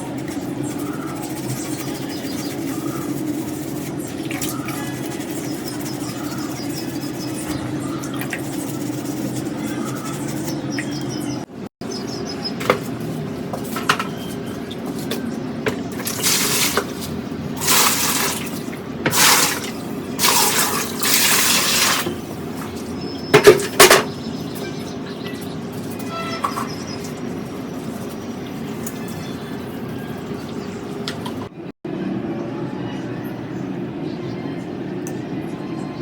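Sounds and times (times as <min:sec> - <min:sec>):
water running and splashing: 0:15.9 - 0:22.9.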